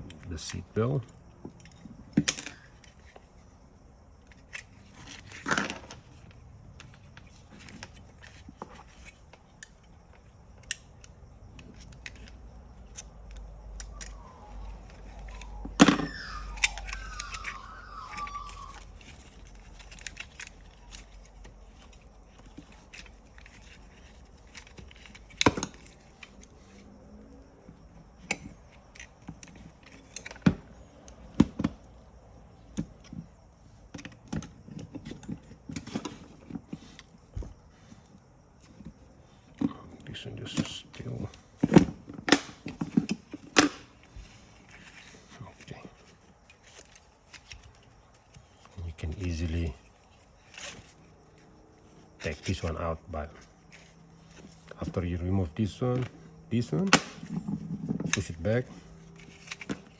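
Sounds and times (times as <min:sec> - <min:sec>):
parts clicking and knocking: 0:04.2 - 0:26.9, 0:27.7 - 0:52.8, 0:55.8 - 0:59.9
squeaky scrape: 0:14.1 - 0:20.0.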